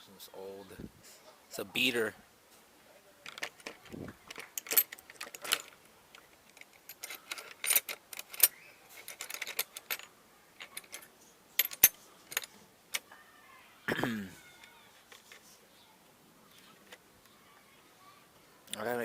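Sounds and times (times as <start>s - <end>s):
metal tools clinking: 3.2s - 13.0s.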